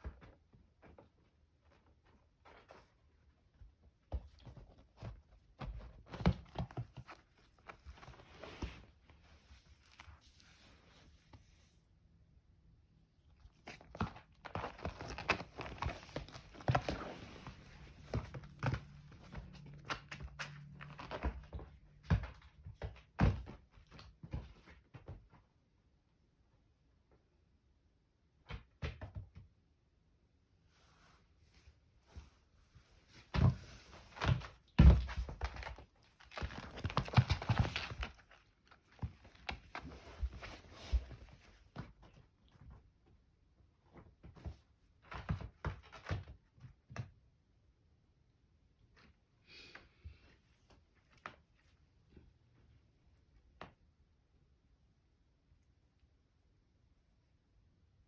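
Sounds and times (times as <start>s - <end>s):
wrapping rustling and crinkling: 35.0s - 41.7s.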